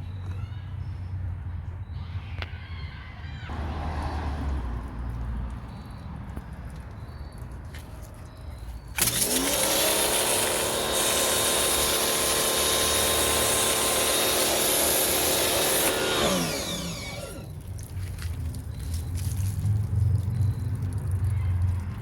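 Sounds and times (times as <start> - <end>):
water jet hissing: 9.0 - 17.5
pressure washer motor whine: 9.0 - 17.6.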